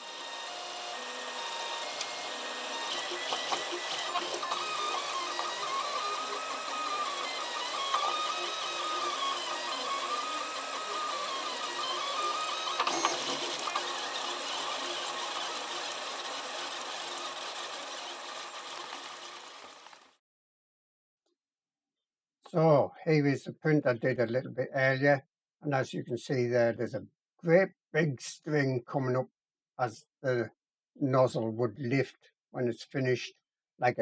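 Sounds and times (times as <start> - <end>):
stepper motors whining: 0.0 - 20.1
printer clicks: 12.7 - 14.0.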